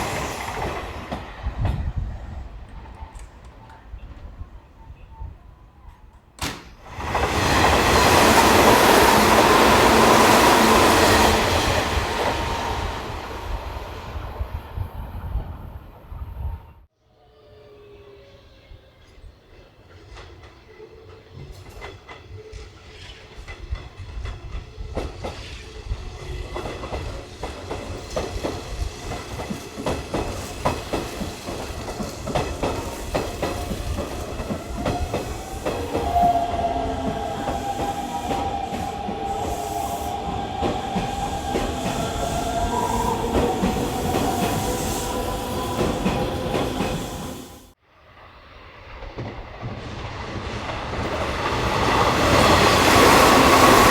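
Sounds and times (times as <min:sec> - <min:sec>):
steady train whine: 0:00.0 - 0:53.9
train wheels clattering over rails: 0:21.4 - 0:47.8.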